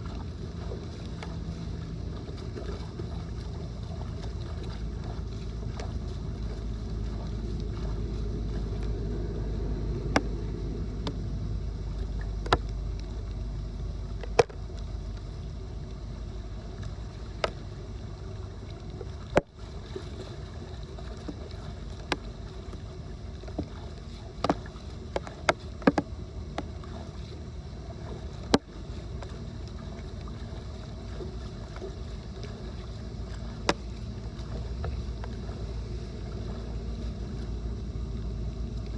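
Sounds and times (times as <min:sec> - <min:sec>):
floodwater draining: 0:00.0 - 0:13.4, 0:14.0 - 0:38.9
sharp knocks and clicks: 0:12.4 - 0:12.8, 0:14.2 - 0:14.6, 0:24.4 - 0:26.7.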